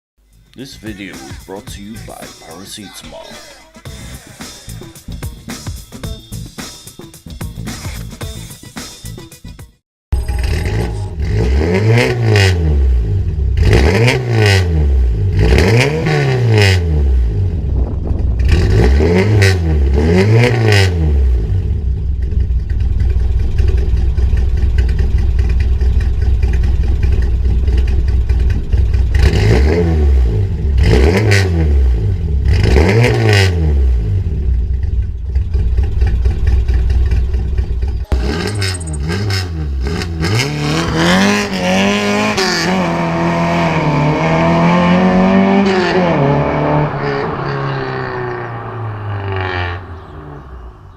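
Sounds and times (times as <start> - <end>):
car engine revving and idling: 10.2 - 50.9.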